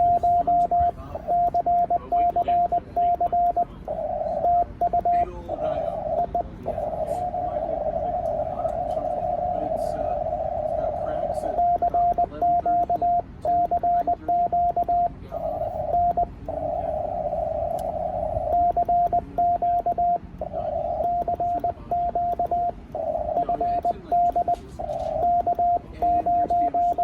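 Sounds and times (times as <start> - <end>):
morse code tone: 0.0 - 27.0
radio receiver hiss: 15.4 - 27.0.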